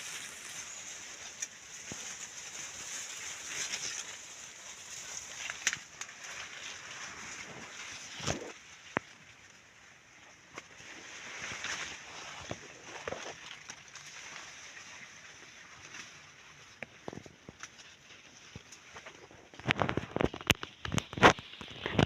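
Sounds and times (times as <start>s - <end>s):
steady high hiss: 0.0s - 5.8s
maize plants rustling: 0.0s - 22.0s.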